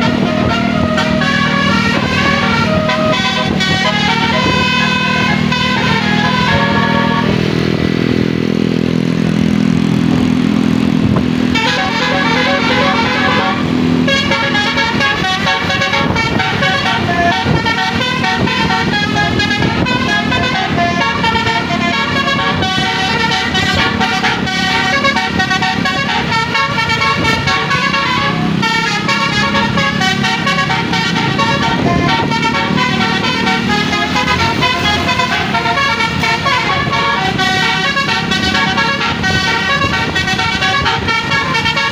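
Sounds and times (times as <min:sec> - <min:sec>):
musical air horn playing tune: 0:00.0 - 0:07.6, 0:11.5 - 0:41.9
steady low drone: 0:00.0 - 0:25.6.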